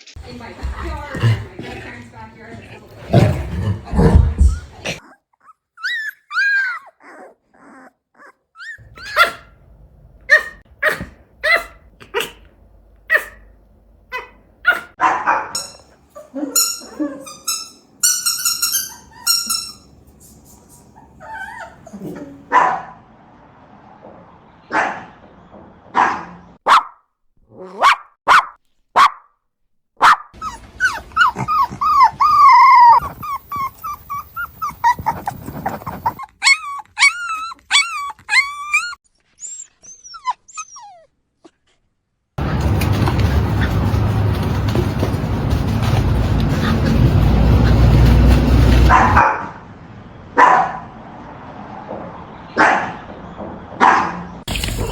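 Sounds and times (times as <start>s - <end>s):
dog whining: 3.2s - 9.6s, 15.6s - 22.5s, 30.4s - 41.8s
dog barking: 8.9s - 9.6s, 10.3s - 12.5s, 13.1s - 13.5s, 14.1s - 15.6s, 21.0s - 23.0s, 24.7s - 25.2s, 25.9s - 27.0s, 27.7s - 29.3s, 30.0s - 30.4s, 48.6s - 49.6s, 50.4s - 51.0s, 52.6s - 53.0s, 53.8s - 54.9s.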